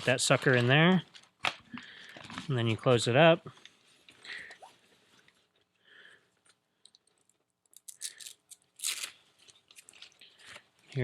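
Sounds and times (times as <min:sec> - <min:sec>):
plastic clicks and crinkling: 0:00.3 - 0:02.5, 0:06.4 - 0:11.0.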